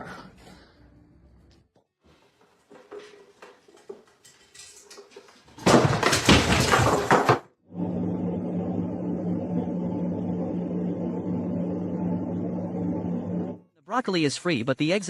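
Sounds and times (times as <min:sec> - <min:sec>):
loud crash with clattering: 0:04.6 - 0:07.5.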